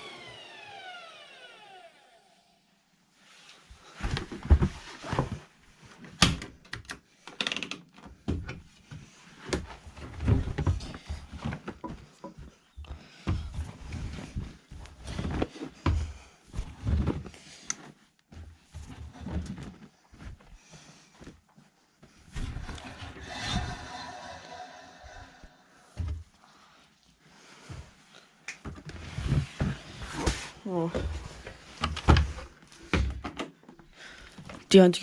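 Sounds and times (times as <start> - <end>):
laundry being handled: 8.3 - 24.1.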